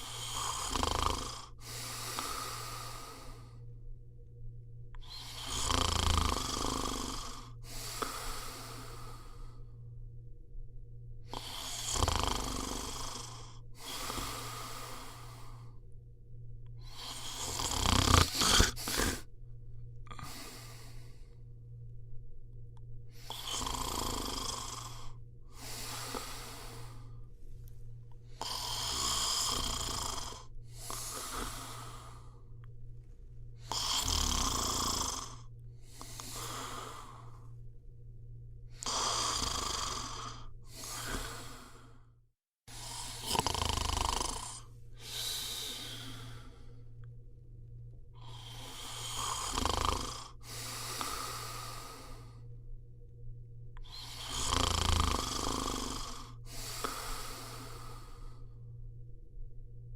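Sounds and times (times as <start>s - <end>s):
person snoring: 0.0s - 3.7s, 5.0s - 9.8s, 11.2s - 15.8s, 16.8s - 19.3s, 20.0s - 21.4s, 23.1s - 27.3s, 28.3s - 32.7s, 33.6s - 37.6s, 38.7s - 42.1s, 42.7s - 47.1s, 48.2s - 52.5s, 53.8s - 58.6s
steady low hum: 0.0s - 59.9s.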